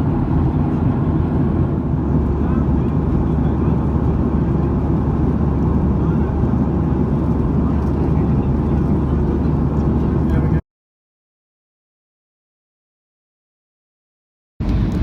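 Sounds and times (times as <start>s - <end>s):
jet engine cabin rumble: 0.0s - 10.6s, 14.6s - 15.0s.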